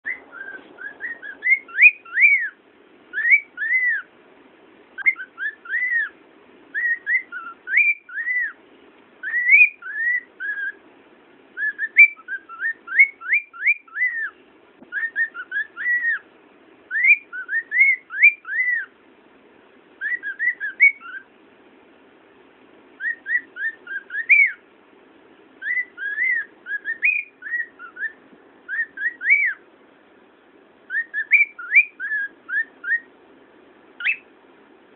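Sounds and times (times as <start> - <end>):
cockatiel whistling: 0.0 - 4.1, 5.0 - 8.6, 9.2 - 10.8, 11.6 - 16.2, 16.9 - 18.9, 20.0 - 21.3, 23.0 - 24.6, 25.6 - 29.6, 30.9 - 33.1, 34.0 - 34.3.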